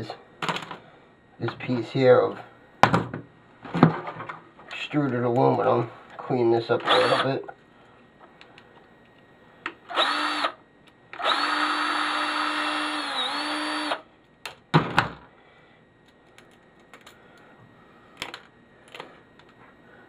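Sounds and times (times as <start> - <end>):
electric drill whining: 6.8 - 7.4, 9.9 - 10.6, 11.2 - 14.0.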